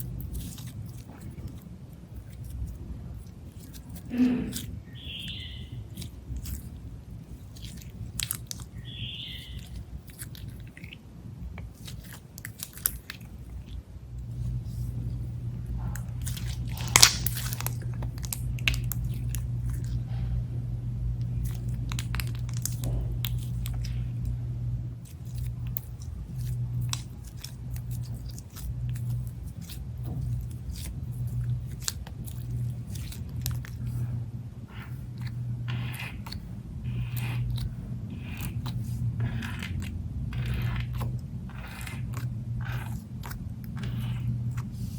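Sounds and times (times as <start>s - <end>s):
slime squished by hand: 14.7s - 20.0s, 21.3s - 24.1s, 25.0s - 34.0s, 34.7s - 44.9s.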